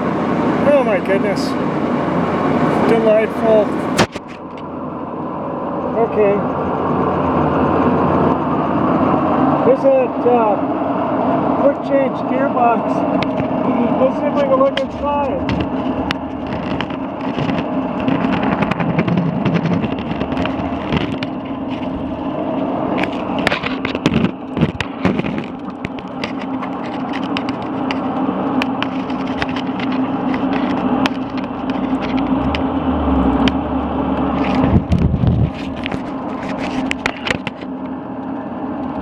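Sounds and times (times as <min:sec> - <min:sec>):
lathe running hum: 0:00.0 - 0:39.0
low rumble: 0:13.4 - 0:23.5, 0:31.5 - 0:35.8
sharp clicks and knocks: 0:14.7 - 0:22.0, 0:22.9 - 0:32.7.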